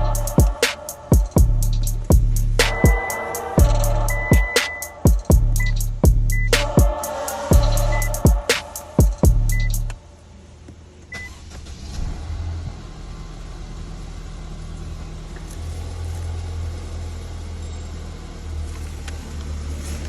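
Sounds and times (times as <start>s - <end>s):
car engine idling: 0.0s - 4.4s, 11.3s - 20.0s
short high beep: 2.6s - 5.0s, 5.6s - 6.6s, 7.8s - 8.2s, 9.5s - 9.8s.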